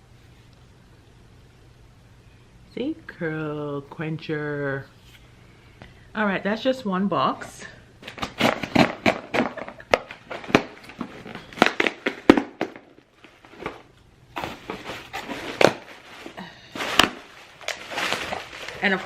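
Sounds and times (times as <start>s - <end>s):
cardboard box being opened: 8.1s - 13.8s, 14.4s - 19.0s.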